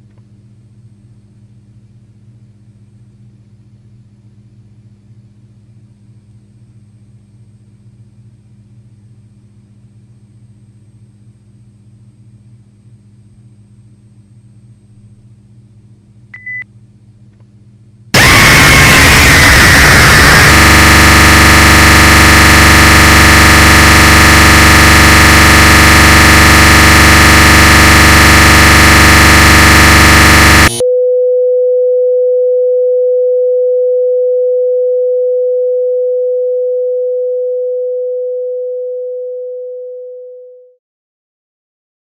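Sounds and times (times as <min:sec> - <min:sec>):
harsh electronic buzzing: 0:18.2 - 0:30.8
steady pure tone: 0:18.2 - 0:30.8.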